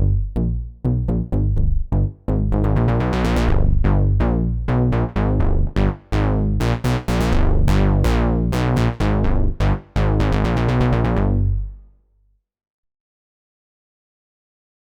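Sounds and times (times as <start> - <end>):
synthesizer bass line: 0.0 - 11.8.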